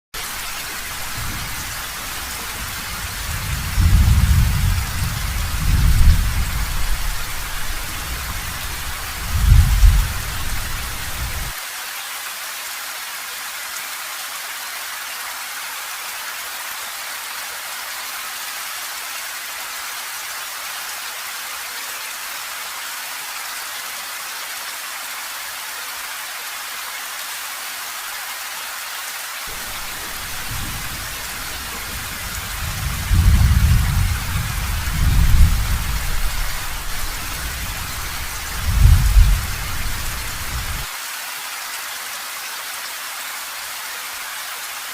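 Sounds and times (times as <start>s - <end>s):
heavy rain falling: 0.2s - 44.9s
low rolling thunder: 0.9s - 11.5s, 29.5s - 40.9s.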